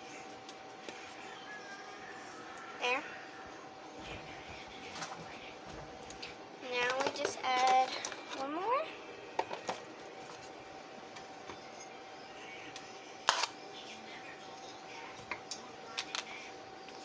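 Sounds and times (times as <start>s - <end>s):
faint steady hum: 0.0s - 17.0s
objects clicking and tapping: 6.1s - 8.5s, 9.4s - 10.5s.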